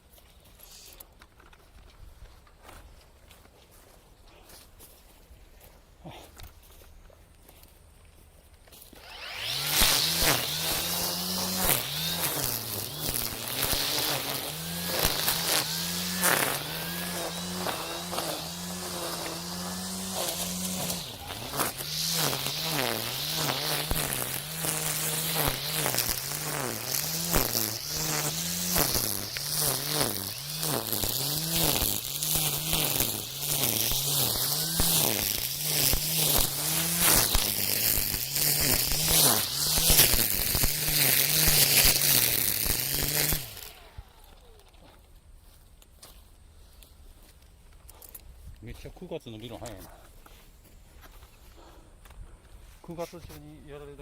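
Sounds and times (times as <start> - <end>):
string trimmer electric whine: 8.7 - 45.1
line crackling against stems: 9.0 - 45.0.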